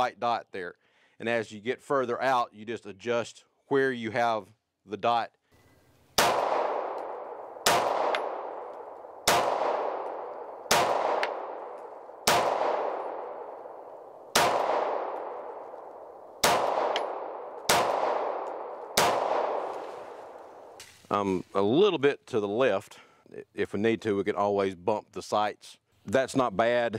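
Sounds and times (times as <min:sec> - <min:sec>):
pistol shots with ringing: 0:06.2 - 0:20.8.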